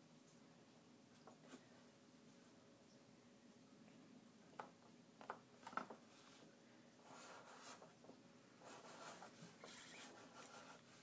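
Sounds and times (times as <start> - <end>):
pencil scratching on paper: 7.1 - 7.9, 8.6 - 11.0.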